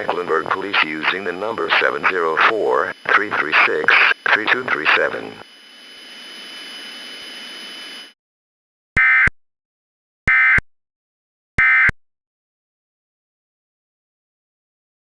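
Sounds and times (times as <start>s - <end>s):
radio static hiss: 0.0s - 8.1s.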